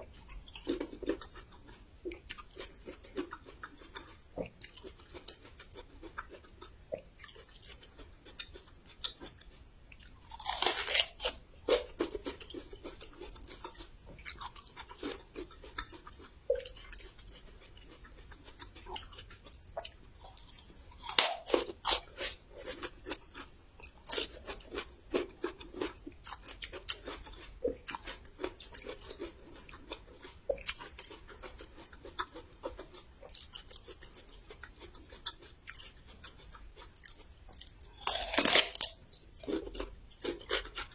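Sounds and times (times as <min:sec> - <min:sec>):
crisp crunching bites of ginger: 0:10.2 - 0:16.0, 0:20.2 - 0:30.0, 0:37.9 - 0:40.9.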